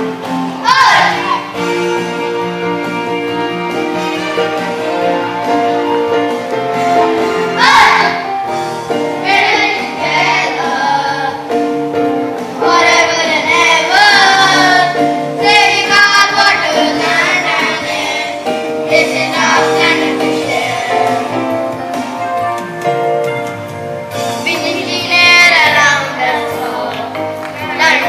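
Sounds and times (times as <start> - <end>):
instrumental backing: 0.0 - 28.0
high voices singing: 0.1 - 2.1, 7.0 - 11.7, 12.4 - 21.6, 24.4 - 28.0.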